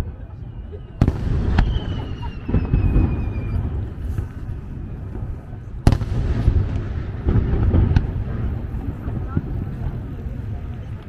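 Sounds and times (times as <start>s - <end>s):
falling firework whistle: 0.0s - 5.1s
fireworks booming and crackling: 0.0s - 11.0s
sharp firework bang: 1.0s - 4.4s, 5.8s - 9.9s.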